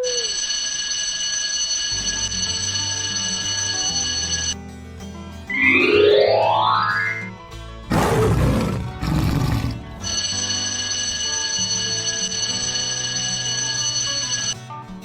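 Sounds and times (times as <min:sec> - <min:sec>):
steady ringing tone: 0:00.0 - 0:04.6
background music: 0:02.0 - 0:15.0
rising sound effect: 0:05.5 - 0:07.4
large animal roaring: 0:07.9 - 0:10.2.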